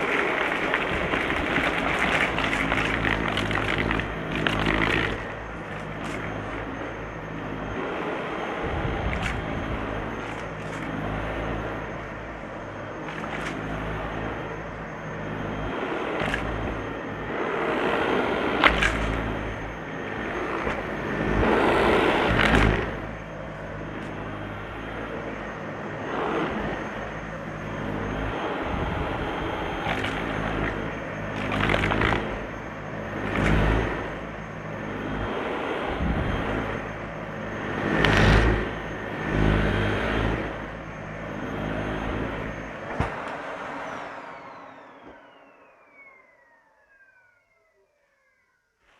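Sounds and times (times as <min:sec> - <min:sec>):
vacuum sucking up crunchy debris: 0:00.0 - 0:35.3, 0:36.0 - 0:40.8
vacuum cleaner motor hum: 0:00.0 - 0:48.9.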